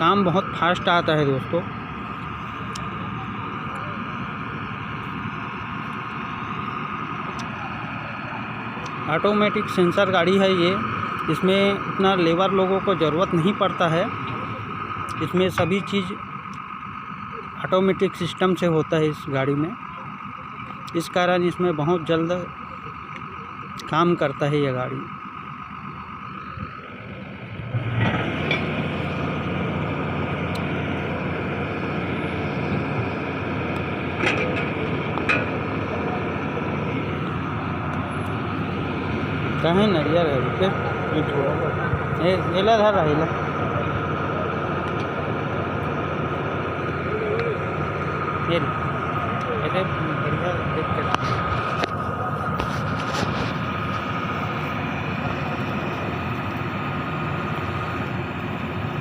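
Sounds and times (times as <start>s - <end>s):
constant high whine: 0.0s - 59.0s
drilling rig engine running: 0.0s - 59.0s
metallic clanks: 34.1s - 35.8s.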